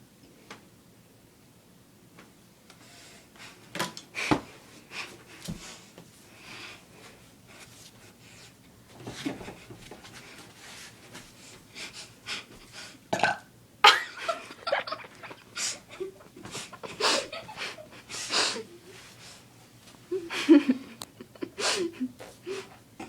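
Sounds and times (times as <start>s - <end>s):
person burping: 13.1s - 13.5s.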